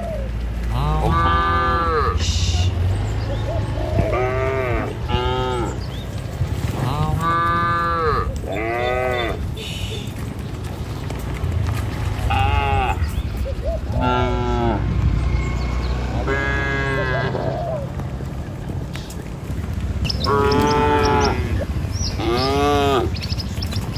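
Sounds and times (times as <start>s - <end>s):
low rumble: 0.0s - 23.9s
cattle mooing: 0.6s - 10.1s, 12.0s - 13.3s, 13.9s - 15.0s, 16.0s - 17.6s, 20.1s - 23.3s.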